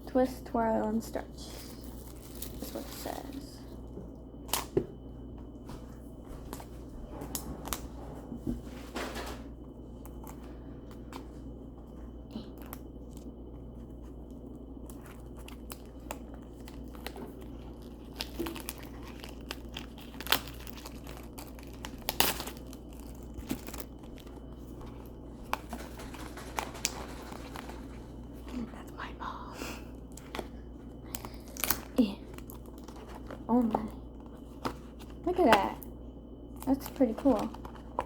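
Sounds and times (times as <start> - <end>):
plastic packaging tearing: 14.9 - 27.9.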